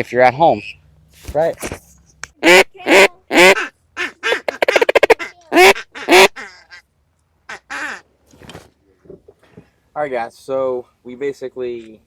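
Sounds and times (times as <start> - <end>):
duck call clucks: 2.4 - 6.9, 7.5 - 8.0
duck call quacking: 2.4 - 6.9, 7.5 - 8.0.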